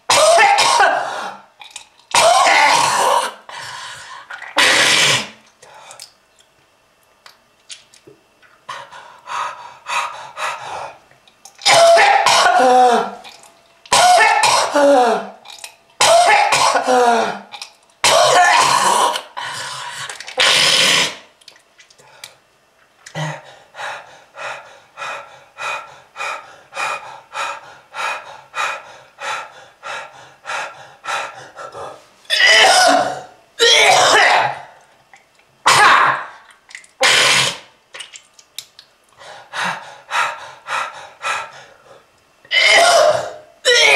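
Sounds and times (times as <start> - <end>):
person coughing hard: 0.1 - 1.2, 2.1 - 3.4, 11.6 - 13.2, 13.9 - 15.3, 16.0 - 17.4, 18.0 - 19.2, 32.3 - 34.7, 35.7 - 36.3, 37.0 - 37.6, 42.5 - 43.9.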